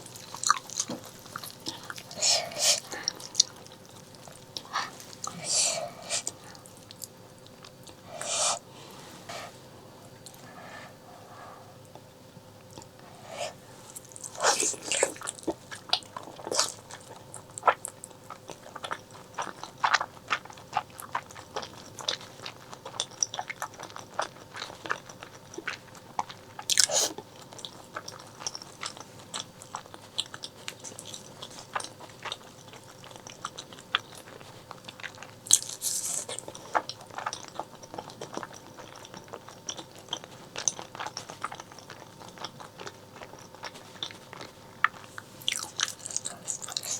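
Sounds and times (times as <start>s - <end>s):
close chewing and biting: 0.0s - 8.6s, 12.6s - 46.9s.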